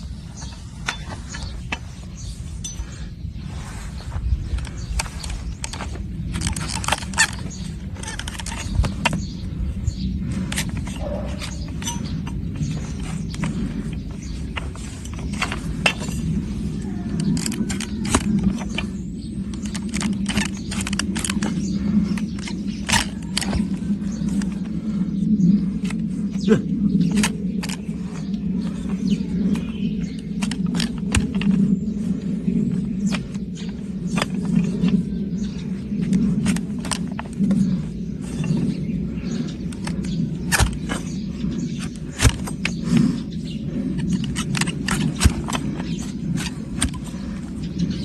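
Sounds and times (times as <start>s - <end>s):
hoof trimming tools clicking: 0.0s - 3.1s, 4.0s - 48.0s
low rumble: 0.0s - 48.0s
steady low hum: 0.0s - 48.0s.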